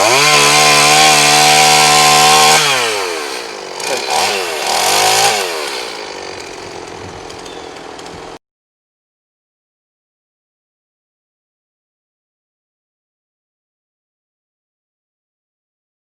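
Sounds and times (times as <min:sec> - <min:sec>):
chainsaw revving: 0:00.0 - 0:08.4.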